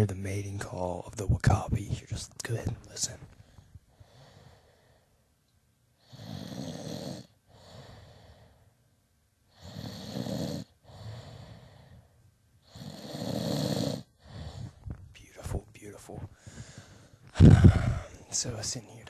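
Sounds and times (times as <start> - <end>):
soft breath: 3.4 - 5.3, 7.5 - 8.8, 10.8 - 12.2, 14.2 - 15.0, 16.2 - 18.3
man snoring: 6.0 - 8.3, 9.6 - 11.9, 12.7 - 14.8, 17.4 - 18.2.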